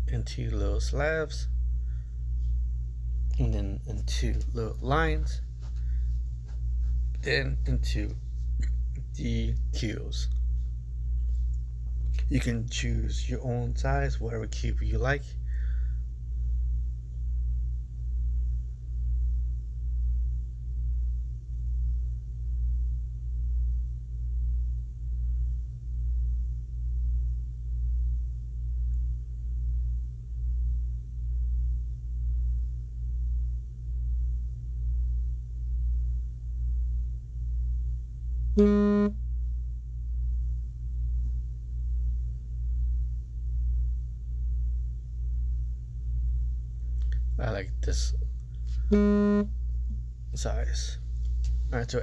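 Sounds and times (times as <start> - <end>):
brief pitched note: 38.6 - 39.2, 48.9 - 49.5.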